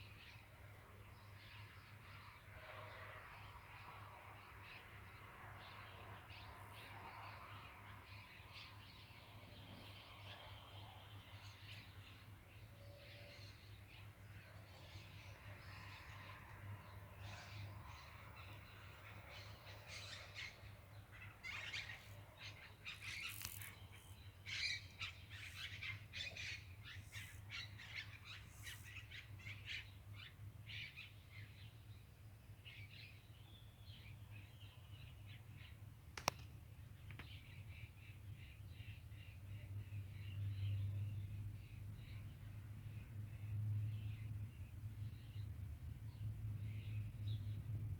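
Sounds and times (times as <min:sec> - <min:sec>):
small birds chirping: 0:08.1 - 0:32.0
sharp click: 0:36.2 - 0:36.5.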